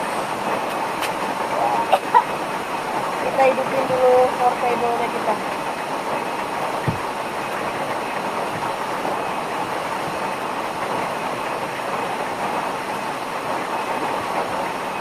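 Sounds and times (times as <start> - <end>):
falling rain: 0.0 - 15.0
waterfall rushing: 0.0 - 15.0.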